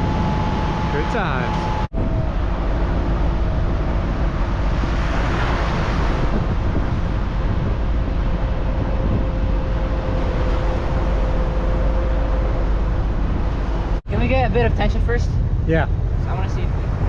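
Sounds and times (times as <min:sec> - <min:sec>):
wind noise on microphone: 0:00.0 - 0:17.0
vehicle engine running: 0:15.2 - 0:17.0.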